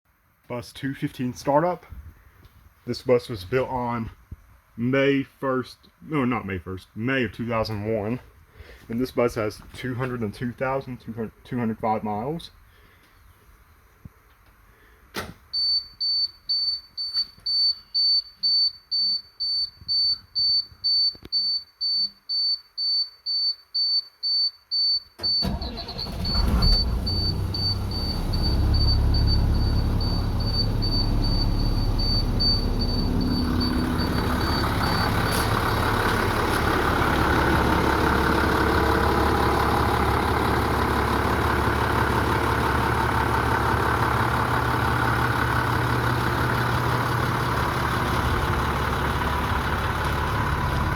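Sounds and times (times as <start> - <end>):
diesel engine cranking and idling: 25.2 - 50.9.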